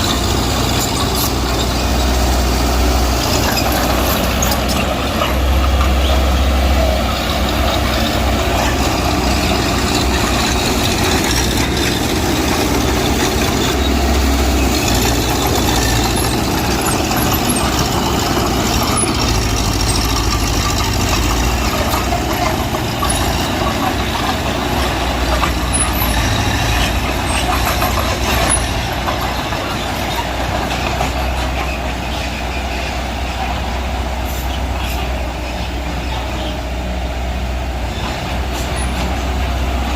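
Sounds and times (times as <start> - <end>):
diesel machinery engine rumble: 0.0 - 39.9.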